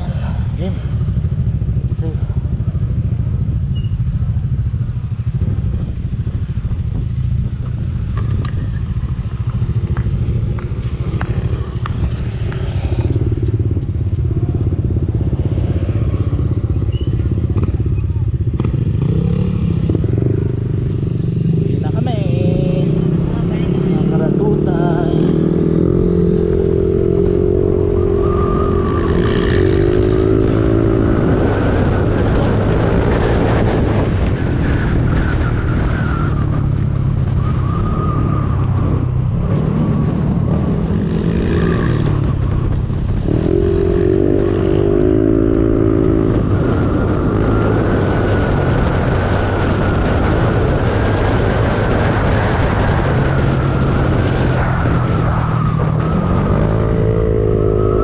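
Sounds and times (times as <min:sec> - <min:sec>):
motorcycle engine running: 0:00.0 - 0:35.3
wind on microphone: 0:00.0 - 0:58.0.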